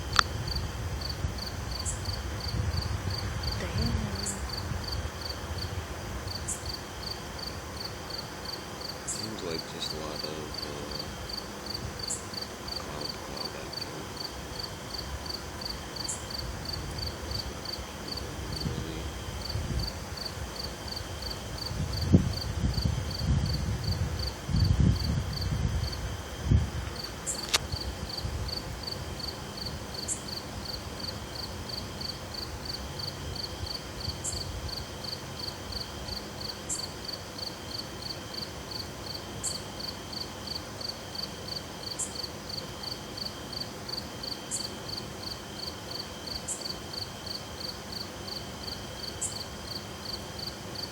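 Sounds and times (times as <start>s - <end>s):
crickets chirping: 0.0s - 50.9s
high insect trill: 0.0s - 50.9s
sharp click: 27.3s - 27.7s.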